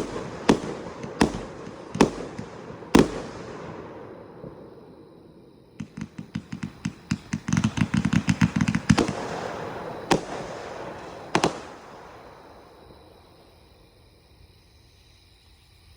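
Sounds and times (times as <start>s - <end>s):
firework cake bangs: 0.0s - 4.8s, 5.8s - 12.7s.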